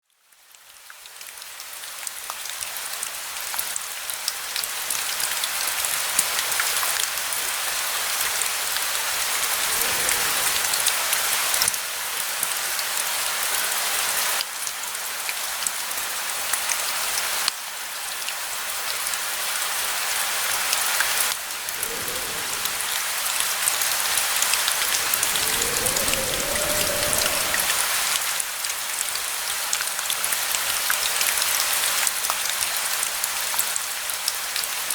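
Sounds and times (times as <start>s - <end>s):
dense rain pattering: 0.4s - 14.8s, 17.2s - 29.1s
faint low rumbles: 21.3s - 28.3s.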